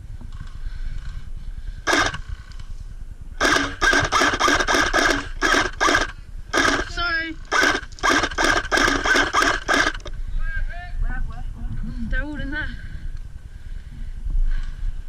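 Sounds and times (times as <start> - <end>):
airsoft gun firing bursts: 1.8 - 2.5, 3.4 - 10.1
gearbox whirring clatter: 1.9 - 2.7, 3.4 - 10.1.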